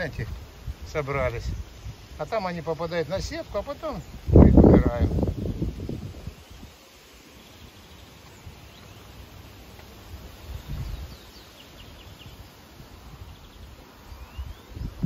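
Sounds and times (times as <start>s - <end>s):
leaves rustling: 0.0s - 15.0s
wind buffeting microphone: 3.1s - 6.8s, 10.2s - 11.3s, 12.8s - 15.0s.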